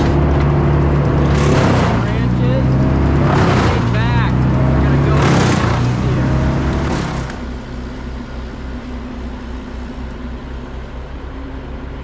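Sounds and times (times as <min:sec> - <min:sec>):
diesel engine rumbling: 0:00.0 - 0:12.0.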